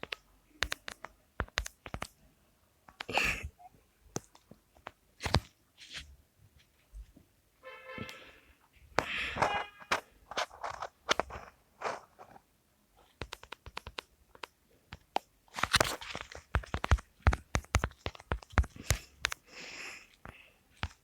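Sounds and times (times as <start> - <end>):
irregular crunches and clicks: 0.0 - 2.2, 4.1 - 6.0, 9.0 - 19.5.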